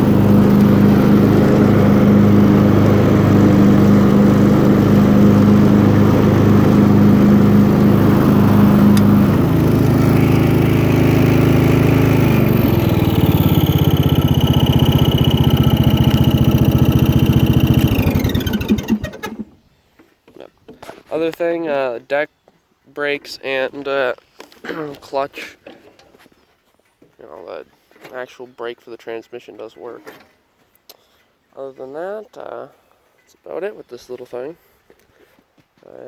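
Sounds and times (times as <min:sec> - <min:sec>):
riding mower engine running: 0:00.0 - 0:19.6.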